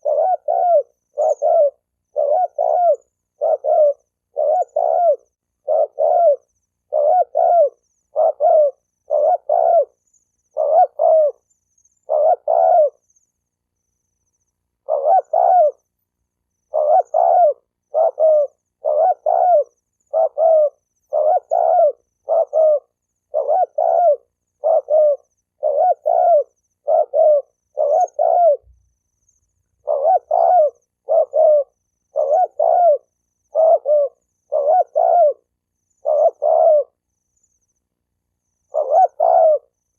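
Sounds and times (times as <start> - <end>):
dove cooing: 0.0 - 13.1, 14.8 - 15.9, 16.6 - 28.9, 29.7 - 37.0, 38.6 - 39.8.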